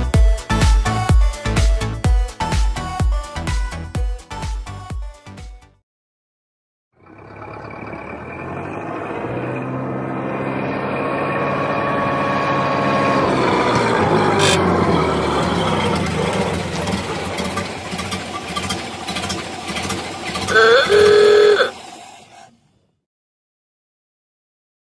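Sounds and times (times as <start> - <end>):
car engine driving off: 7.0 - 22.9
car horn: 20.4 - 21.8.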